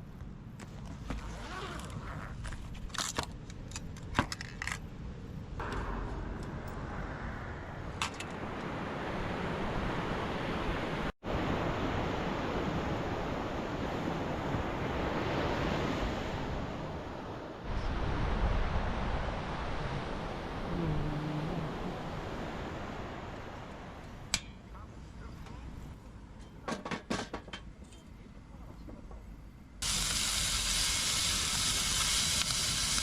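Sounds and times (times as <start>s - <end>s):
wind: 0.0s - 33.0s
ocean waves on shore: 5.6s - 24.4s, 29.8s - 33.0s.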